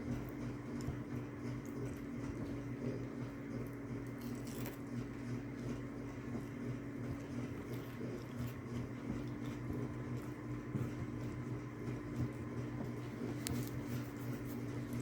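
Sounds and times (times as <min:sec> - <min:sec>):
steady low hum: 0:00.0 - 0:15.0
faint clicks and rustles: 0:12.1 - 0:15.0.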